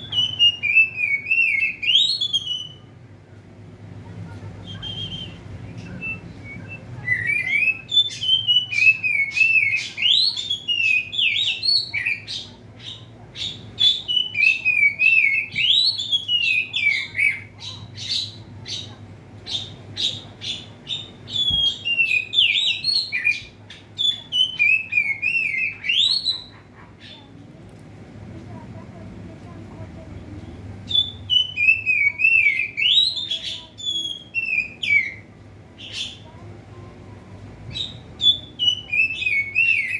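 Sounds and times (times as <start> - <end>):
songbird singing whistled phrases: 0.0 - 2.9, 4.6 - 26.5, 30.9 - 36.2, 37.7 - 39.9.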